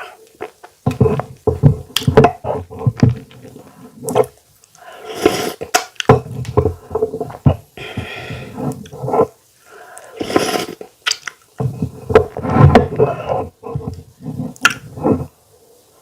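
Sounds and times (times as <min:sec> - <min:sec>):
lip smacks and clicks: 0:11.0 - 0:11.5.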